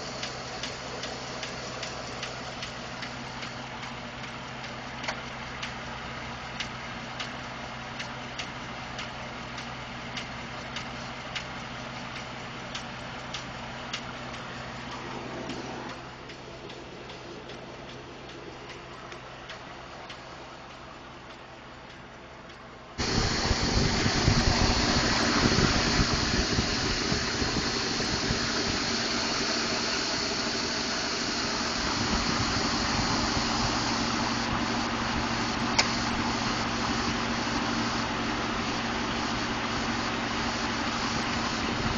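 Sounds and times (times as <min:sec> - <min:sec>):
engine idling: 0:00.0 - 0:41.9
steady rushing noise: 0:23.0 - 0:41.9.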